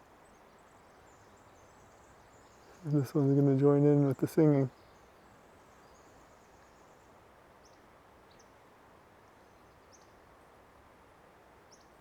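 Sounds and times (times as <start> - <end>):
songbird chirps: 0.0 - 8.6, 9.3 - 10.6
background hiss: 0.0 - 12.0.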